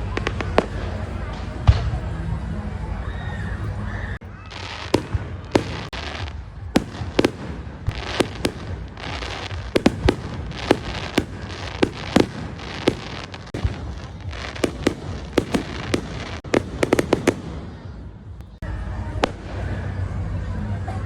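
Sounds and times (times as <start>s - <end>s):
fireworks sharp bangs: 0.0s - 2.2s, 4.2s - 18.6s.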